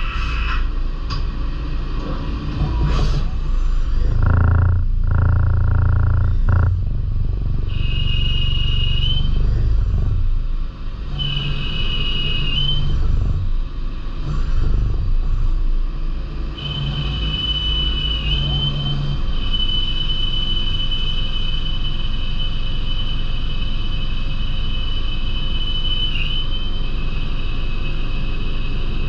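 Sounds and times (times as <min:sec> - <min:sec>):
low drone: 0:00.0 - 0:20.0
high steady machine whine: 0:00.0 - 0:29.0
lathe low rumble: 0:00.0 - 0:29.0.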